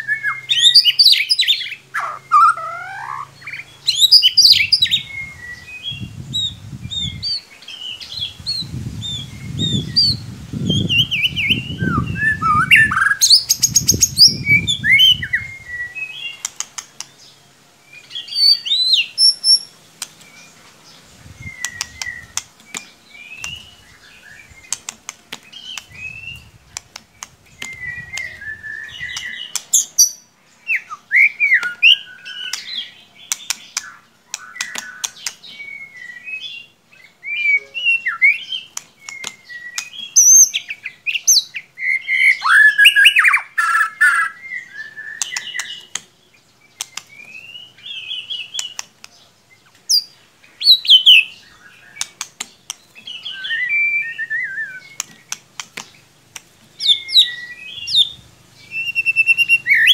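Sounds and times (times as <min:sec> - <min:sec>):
bird singing whistled phrases: 0:00.0 - 0:07.4, 0:08.0 - 0:16.5, 0:27.6 - 0:33.0, 0:33.8 - 0:46.0, 0:49.9 - 0:52.2, 0:53.0 - 0:55.3, 0:56.8 - 0:59.9.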